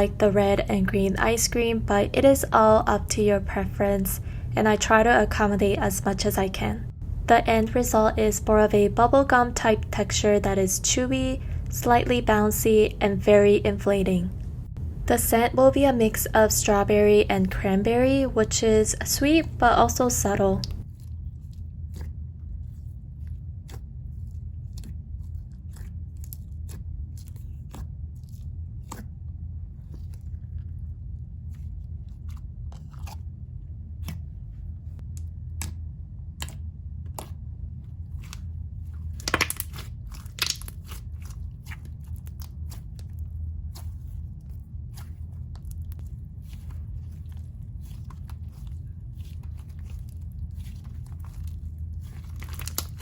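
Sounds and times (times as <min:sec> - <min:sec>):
steady low hum: 0:00.0 - 0:53.0
slime being squished by hand: 0:38.1 - 0:53.0
crackling pops: 0:39.2 - 0:39.8.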